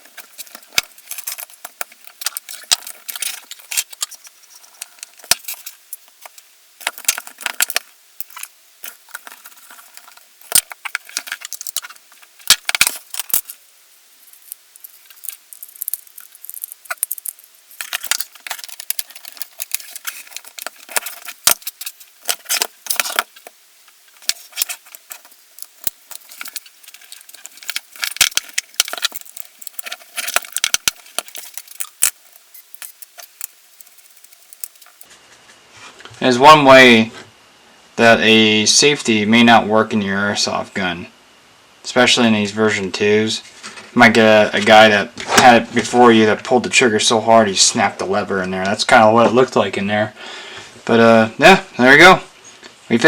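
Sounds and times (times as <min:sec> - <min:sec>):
small parts clicking and rattling: 0:00.0 - 0:13.6, 0:14.2 - 0:35.1.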